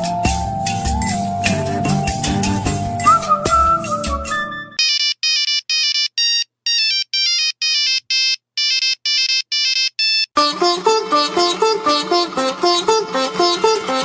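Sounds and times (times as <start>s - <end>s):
music: 0.0s - 4.8s, 10.4s - 14.0s
plucked string music: 0.0s - 4.8s, 10.4s - 14.0s
monophonic phone ringtone: 4.5s - 10.3s.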